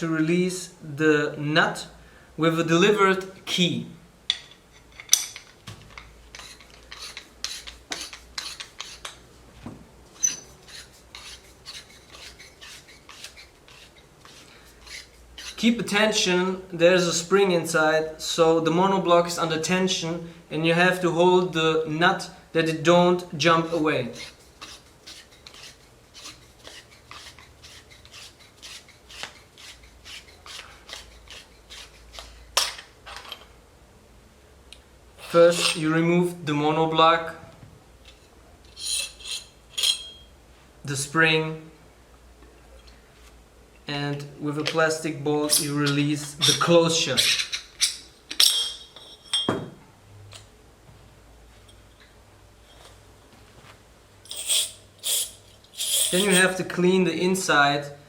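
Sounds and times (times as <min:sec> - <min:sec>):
metal threads rasping: 0:04.3 - 0:09.2, 0:10.1 - 0:15.7, 0:23.6 - 0:32.7, 0:38.7 - 0:40.3, 0:54.2 - 0:56.6
spanner scraping metal nut: 0:04.3 - 0:09.2, 0:10.2 - 0:15.8, 0:23.6 - 0:33.4, 0:35.3 - 0:35.8, 0:38.7 - 0:40.3, 0:45.5 - 0:49.4, 0:54.3 - 0:56.6
sharp metal clink: 0:38.8 - 0:40.3.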